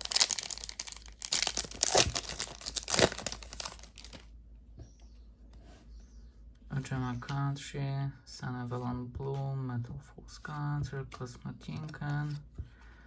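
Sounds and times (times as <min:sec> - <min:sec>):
foil wrapper crinkling and tearing: 0:00.0 - 0:04.2.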